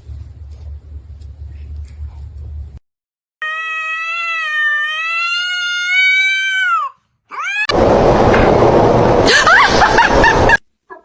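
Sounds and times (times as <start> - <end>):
cat yowling and meowing: 3.4 - 7.7
loud rushing noise: 7.7 - 10.6.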